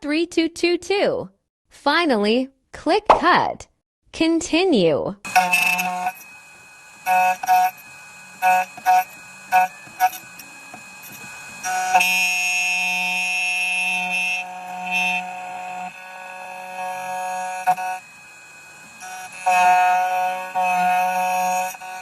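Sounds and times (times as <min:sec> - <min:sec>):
long steady tone: 0:05.3 - 0:22.0.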